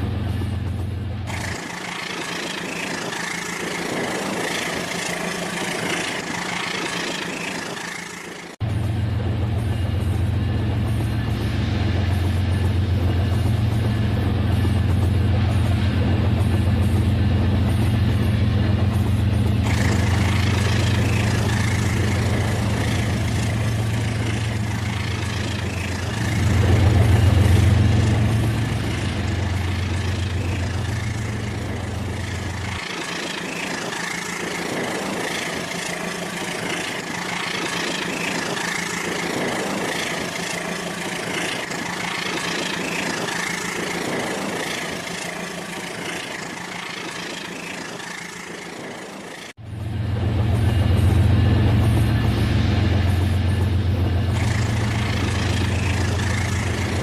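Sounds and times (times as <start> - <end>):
toy train motor hum: 19.6 - 49.6, 54.3 - 57.0.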